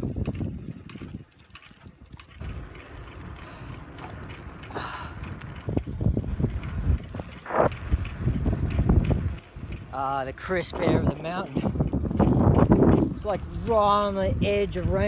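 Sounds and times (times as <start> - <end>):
bike knocks and rattles: 0.0 - 15.0
bike tyre rumble on dirt: 0.0 - 15.0
short rushes of noise: 6.8 - 8.1.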